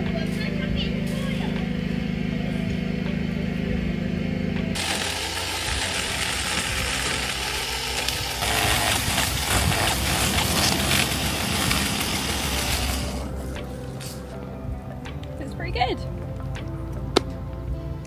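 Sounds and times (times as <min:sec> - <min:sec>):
small chainsaw cutting branch: 0:04.7 - 0:14.3.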